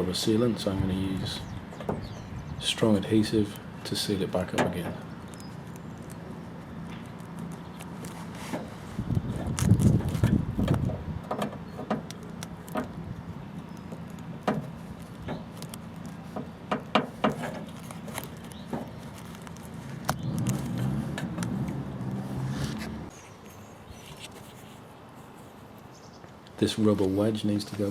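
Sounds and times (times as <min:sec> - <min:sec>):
rustling handling: 0:05.1 - 0:10.7, 0:12.1 - 0:25.8.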